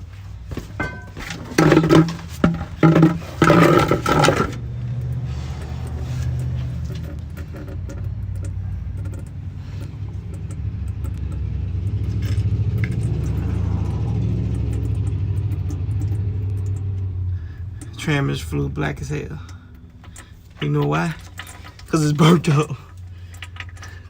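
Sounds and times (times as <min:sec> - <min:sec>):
vehicle engine low rumble: 0:00.0 - 0:24.0
small metallic clicks: 0:19.4 - 0:22.0.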